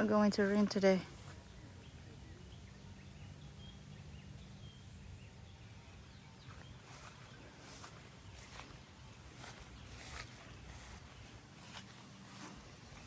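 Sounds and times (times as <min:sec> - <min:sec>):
distant birds chirping: 0:00.0 - 0:13.0
low steady hum: 0:00.0 - 0:13.0.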